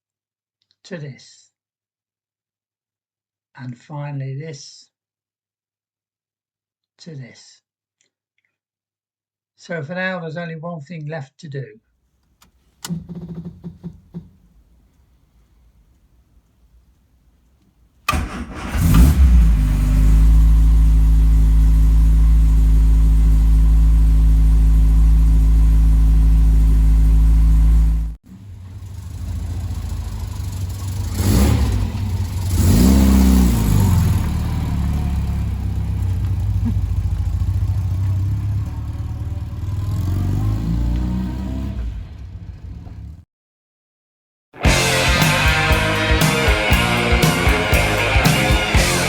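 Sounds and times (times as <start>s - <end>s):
car engine idling and revving: 18.1s - 43.2s, 44.7s - 49.0s.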